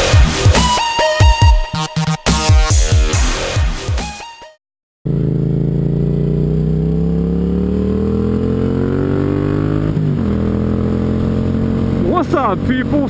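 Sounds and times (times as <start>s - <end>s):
music: 0.0s - 4.6s
motorcycle engine accelerating: 5.1s - 13.0s.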